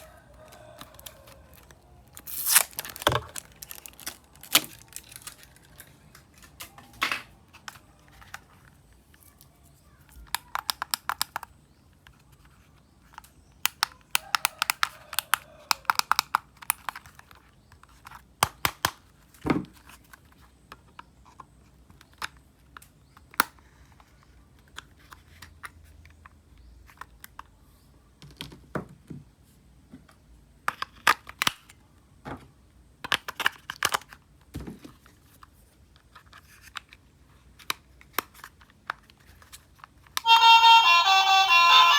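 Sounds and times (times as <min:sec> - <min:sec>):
packaging crinkling and tearing: 0:00.0 - 0:06.6.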